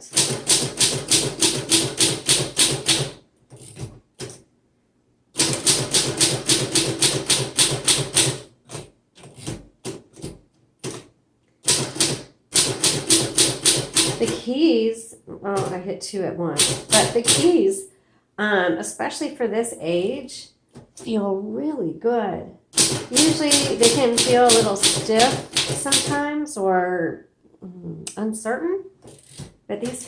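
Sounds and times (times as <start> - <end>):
typewriter typing: 0.0 - 4.4, 5.4 - 14.4, 16.6 - 17.6, 22.8 - 26.2, 29.1 - 30.0.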